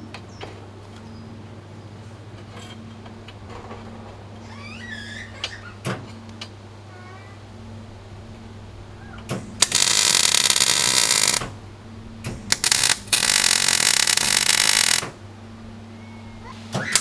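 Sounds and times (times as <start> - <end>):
steady low hum: 0.0 - 16.7
crackling welding arc: 9.6 - 11.6, 12.5 - 15.2.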